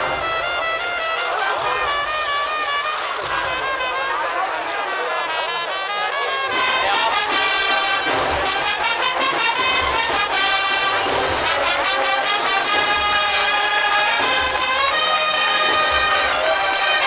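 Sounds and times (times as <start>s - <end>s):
brass band playing a march: 0.0s - 17.0s
drum strokes: 6.5s - 17.0s
deep bass drum beating: 6.7s - 16.9s.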